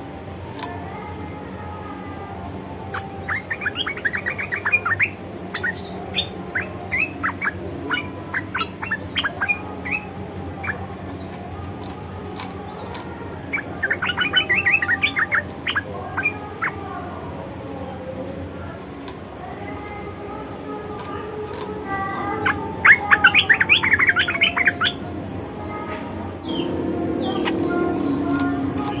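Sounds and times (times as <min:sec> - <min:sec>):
bird chattering chirps: 0:02.9 - 0:11.5, 0:12.6 - 0:16.8, 0:21.2 - 0:25.0, 0:26.4 - 0:29.0.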